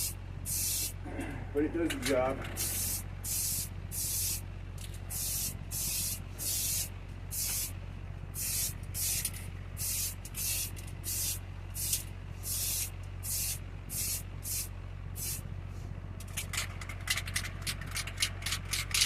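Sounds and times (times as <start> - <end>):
spray paint hissing bursts: 0.0 - 1.0, 2.6 - 4.4, 5.1 - 7.7, 8.4 - 15.4
fan humming: 0.0 - 19.0.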